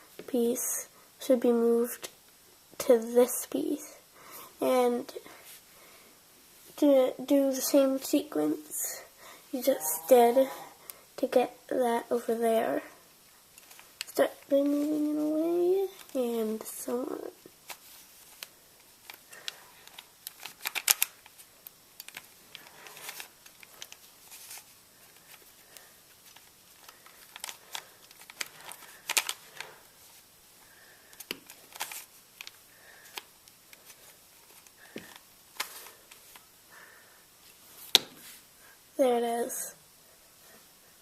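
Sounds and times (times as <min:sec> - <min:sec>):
puzzle cube twisting clicks: 0:17.7 - 0:21.4, 0:22.0 - 0:24.0, 0:26.3 - 0:29.6, 0:31.1 - 0:35.7.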